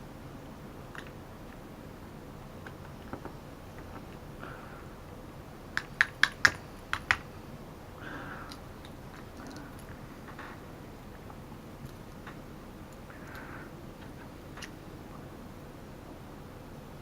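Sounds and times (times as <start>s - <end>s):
small sharp clicks: 0.9s - 1.6s, 5.8s - 7.3s, 8.4s - 15.2s.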